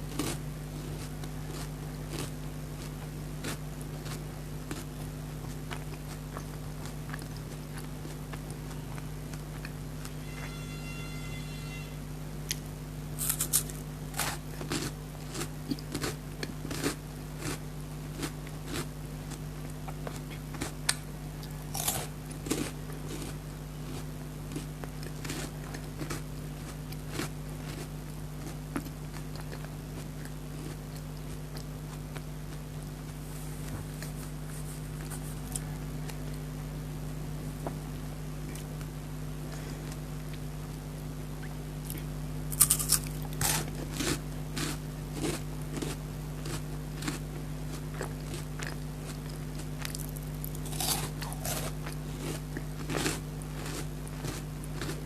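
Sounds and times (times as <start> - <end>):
crunching and chewing wafer: 0.0 - 10.6, 12.5 - 36.4, 41.8 - 55.0
steady low hum: 0.0 - 55.0.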